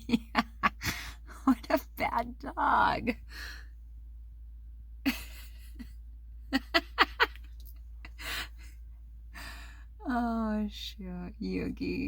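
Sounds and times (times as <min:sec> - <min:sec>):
woman laughing quietly: 0:00.0 - 0:02.0, 0:05.0 - 0:08.9.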